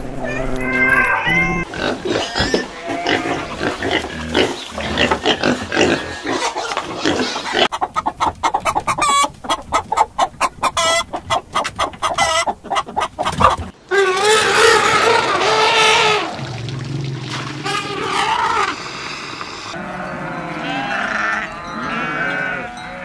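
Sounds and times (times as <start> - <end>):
chickens clucking: 1.6 - 16.2
chicken long drawn-out call: 8.8 - 12.6, 13.9 - 16.4, 17.6 - 23.0.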